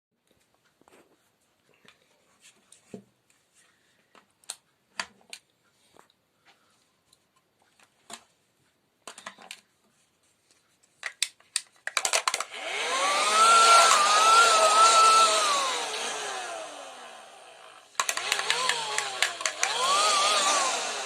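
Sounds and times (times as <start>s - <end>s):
electric pump motor whine: 12.4s - 21.0s.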